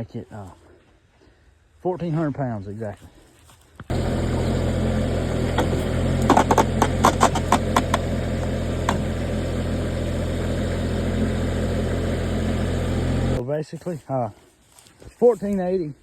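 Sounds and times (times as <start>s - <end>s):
diesel engine running: 3.9s - 13.4s
sharp clacks: 5.5s - 9.1s.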